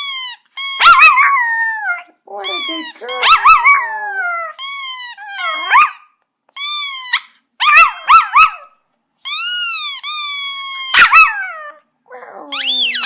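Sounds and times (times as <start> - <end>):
squeaky toy squealing: 0.0 - 13.0
dog howling yips: 0.7 - 2.1, 3.2 - 4.6, 5.2 - 6.1, 7.1 - 8.7, 10.5 - 13.0.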